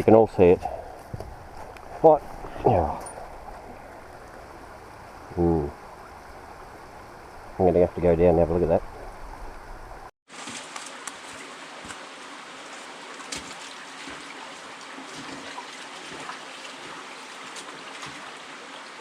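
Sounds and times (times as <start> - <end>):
river water flowing: 0.4 - 19.0
small water splashes: 10.3 - 19.0.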